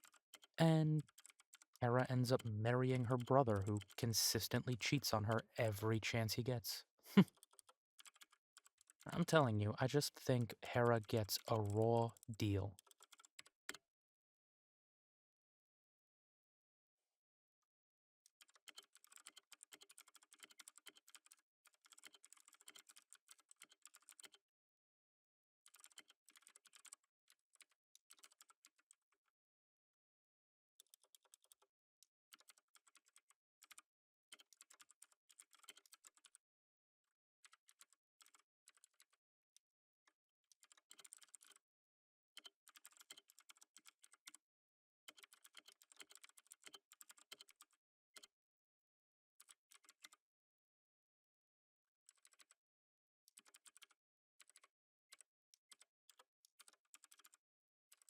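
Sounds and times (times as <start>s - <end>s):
typing on keyboard: 0.0s - 6.5s, 7.2s - 13.8s, 18.4s - 24.4s, 25.7s - 29.0s, 32.3s - 36.4s, 40.5s - 41.6s, 45.1s - 48.3s, 53.3s - 58.0s.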